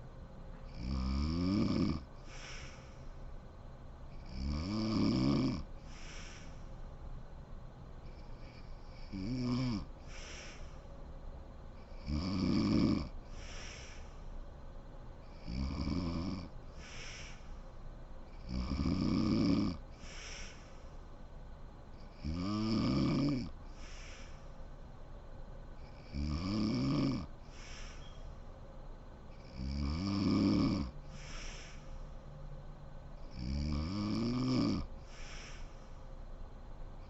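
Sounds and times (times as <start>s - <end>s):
woman snoring: 0.7s - 2.9s, 4.2s - 6.5s, 8.4s - 10.7s, 11.9s - 14.1s, 15.3s - 17.5s, 18.4s - 20.6s, 22.1s - 24.4s, 25.9s - 28.0s, 29.4s - 31.7s, 33.2s - 35.7s
breathy exhale: 2.2s - 3.4s, 5.8s - 6.8s, 10.0s - 11.0s, 13.2s - 14.4s, 16.7s - 17.8s, 19.9s - 21.1s, 23.7s - 24.7s, 27.4s - 28.5s, 31.0s - 32.2s, 35.0s - 36.2s.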